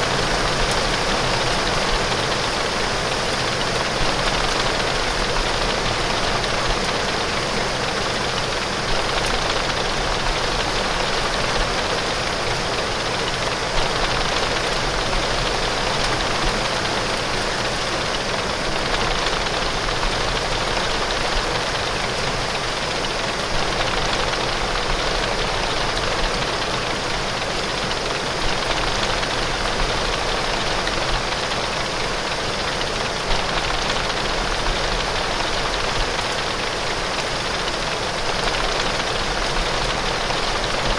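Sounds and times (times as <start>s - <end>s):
heavy rain on window glass: 0.0s - 40.9s.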